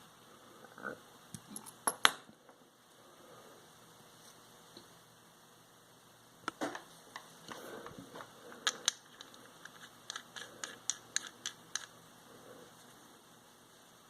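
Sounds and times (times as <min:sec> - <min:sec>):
sharp clicks of small parts: 0:08.6 - 0:12.0.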